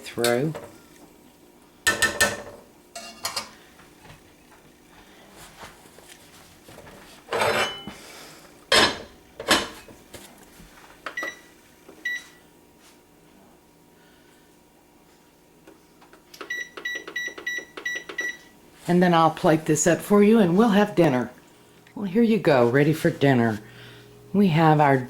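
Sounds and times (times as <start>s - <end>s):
cookware and dishes clanking: 1.9s - 3.6s, 7.3s - 8.0s, 8.7s - 10.0s.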